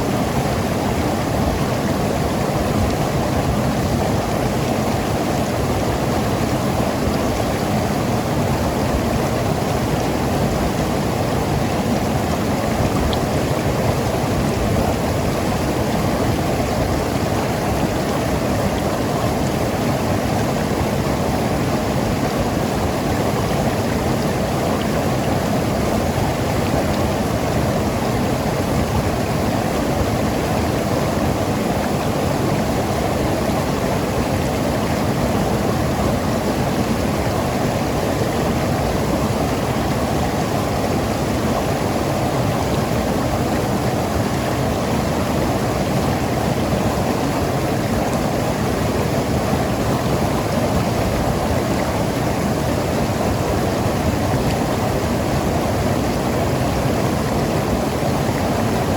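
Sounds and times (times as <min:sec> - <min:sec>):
river flowing over rocks: 0:00.0 - 0:58.9.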